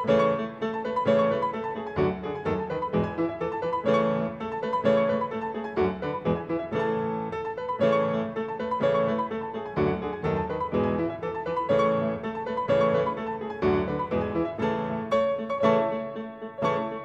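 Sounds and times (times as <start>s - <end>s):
gentle piano melody: 0.0s - 17.0s.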